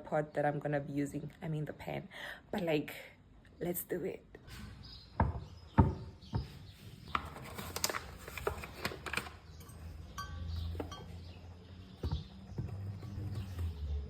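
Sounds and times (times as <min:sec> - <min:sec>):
utensils and dishes clinking: 0:09.1 - 0:11.5.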